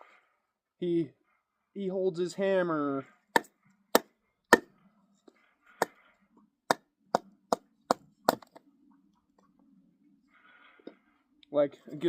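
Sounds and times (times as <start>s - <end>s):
hammer strikes: 3.4s - 4.7s, 6.7s - 8.6s.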